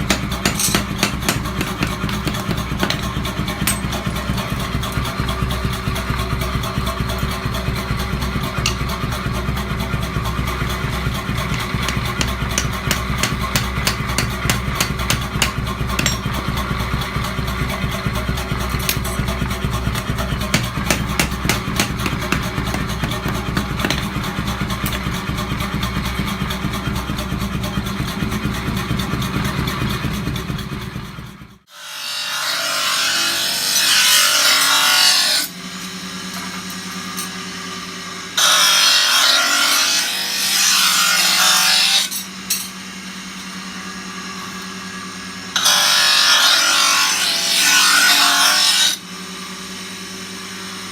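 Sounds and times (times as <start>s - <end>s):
sharp metal taps: 0.0s - 4.1s, 8.6s - 8.9s, 11.5s - 16.3s, 20.0s - 24.2s
motor humming: 0.0s - 16.6s, 17.8s - 26.2s
grinder grinding steel: 0.0s - 28.6s, 31.7s - 49.0s.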